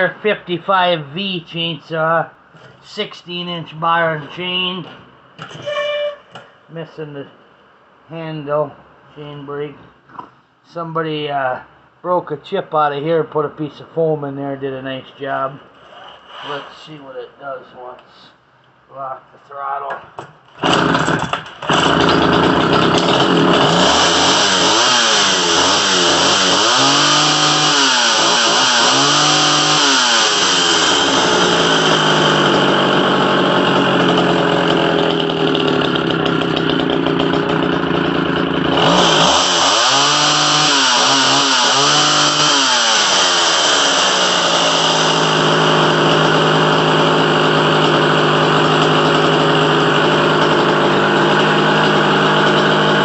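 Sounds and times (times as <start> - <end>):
chainsaw revving: 20.6 - 53.0.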